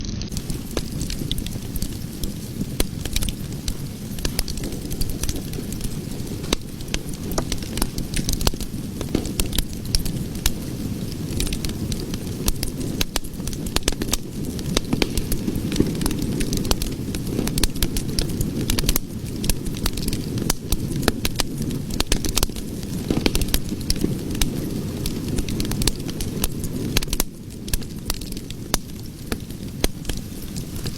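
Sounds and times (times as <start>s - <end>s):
cooking fire crackling and popping: 0.0s - 30.9s.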